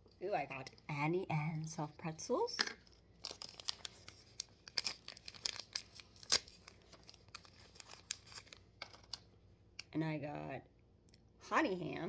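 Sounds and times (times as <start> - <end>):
plastic packaging tearing and crinkling: 3.2 - 9.3.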